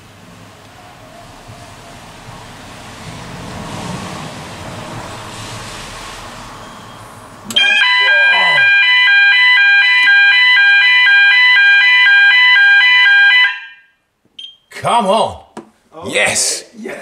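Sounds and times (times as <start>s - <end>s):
fire alarm sounder: 6.6s - 14.7s.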